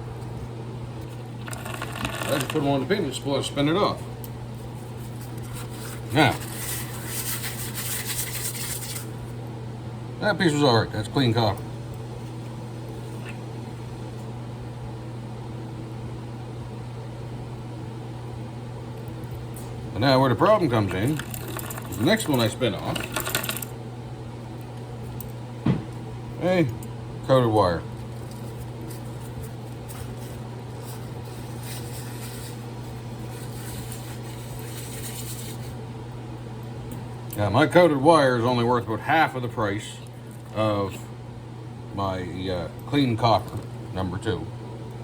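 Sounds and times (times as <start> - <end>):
electrical hum: 0.0 - 45.0
wire rustling and scraping: 1.1 - 2.7, 4.5 - 9.3, 28.0 - 35.8.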